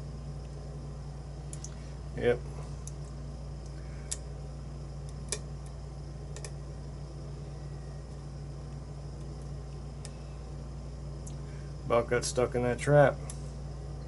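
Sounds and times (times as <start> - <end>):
background hum: 0.0 - 14.0.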